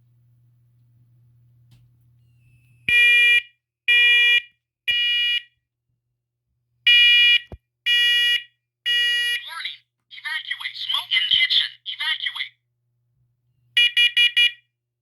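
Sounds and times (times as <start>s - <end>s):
smoke alarm beeps: 13.8s - 14.6s.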